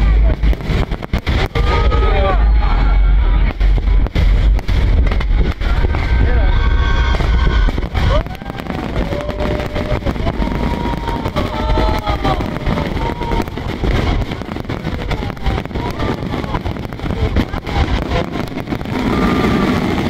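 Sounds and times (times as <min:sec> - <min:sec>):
crowd talking: 0:00.0 - 0:20.0
fireworks crackling: 0:00.0 - 0:20.0
low rumble: 0:00.0 - 0:20.0.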